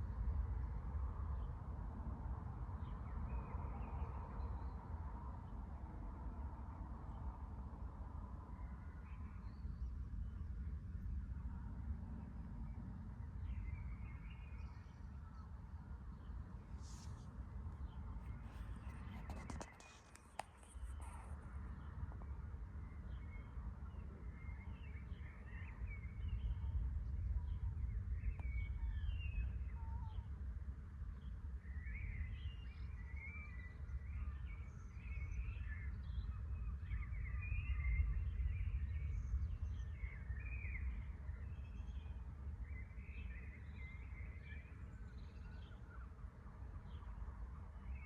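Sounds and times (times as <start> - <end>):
small birds chirping: 13.5 - 30.2.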